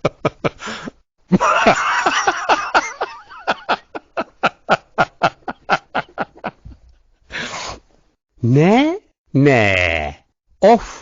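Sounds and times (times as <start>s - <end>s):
man laughing in rapid pulses: 0.0s - 7.0s.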